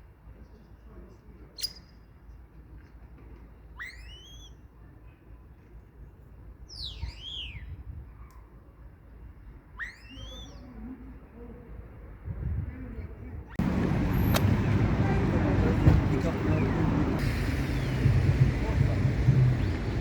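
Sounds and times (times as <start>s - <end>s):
starling whistling: 9.8s - 10.6s, 16.6s - 18.4s.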